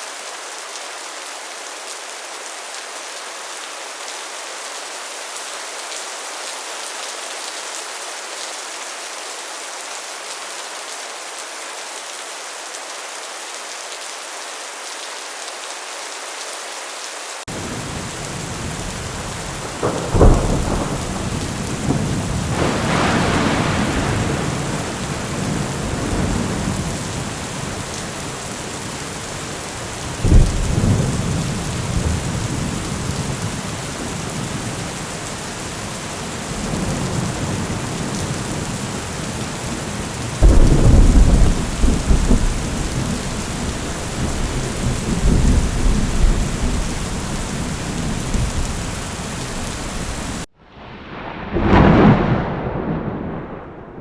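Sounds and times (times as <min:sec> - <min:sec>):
heavy rain on a metal roof: 0:00.0 - 0:54.0
loud thunderclaps: 0:17.5 - 0:34.8, 0:40.4 - 0:54.0
thunder rumbling: 0:17.5 - 0:54.0.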